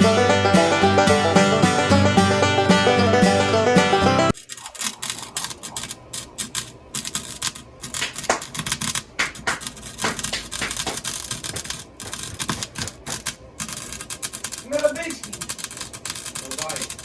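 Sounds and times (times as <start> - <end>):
arc welder crackling and spitting: 4.3 - 17.0.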